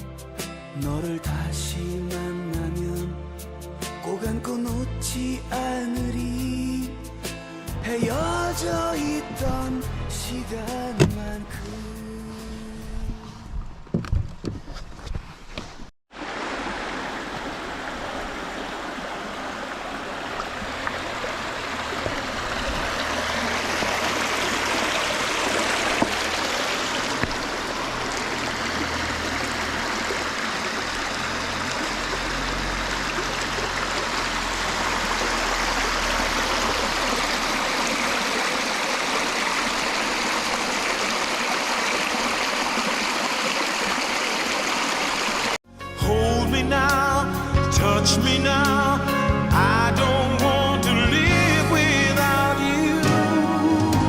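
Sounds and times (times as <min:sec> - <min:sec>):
stream water rushing: 0:16.1 - 0:45.6.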